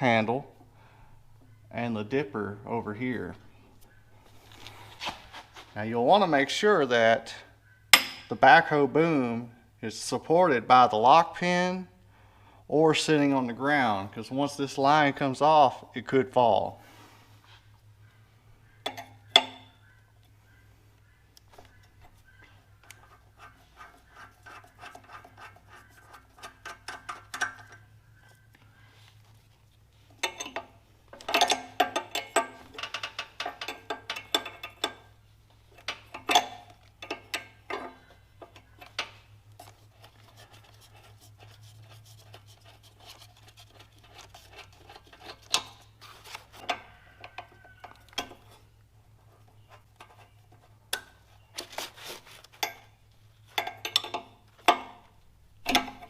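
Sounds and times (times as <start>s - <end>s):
low steady hum: 0.0s - 56.0s
wrenches clanking on metal fittings: 18.9s - 19.7s, 30.1s - 39.2s, 42.3s - 48.6s, 52.4s - 56.0s.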